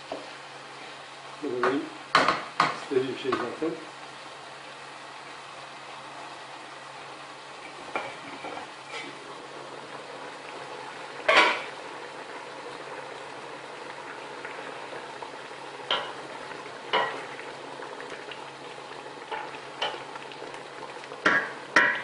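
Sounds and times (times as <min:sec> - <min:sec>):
peppers sizzling in a pan: 0:00.0 - 0:22.0
utensil knocking against pan: 0:21.2 - 0:22.0.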